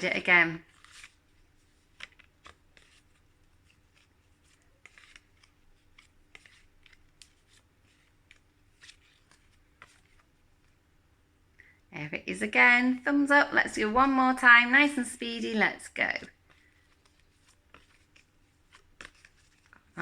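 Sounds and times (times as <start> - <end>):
paper flashcards shuffled: 0.1 - 10.8, 16.1 - 20.0.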